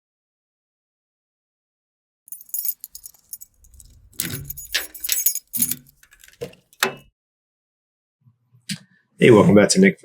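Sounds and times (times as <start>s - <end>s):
metal pieces clinking: 2.3s - 6.4s.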